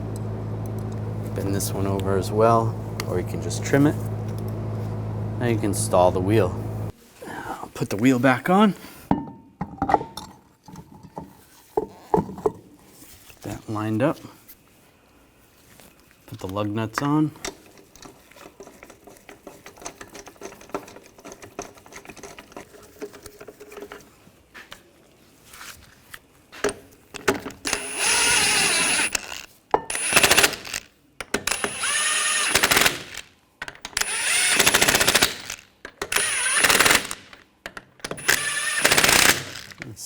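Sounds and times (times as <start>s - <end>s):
impact wrench bursts: 27.6s - 33.3s, 33.9s - 37.4s, 38.1s - 39.8s.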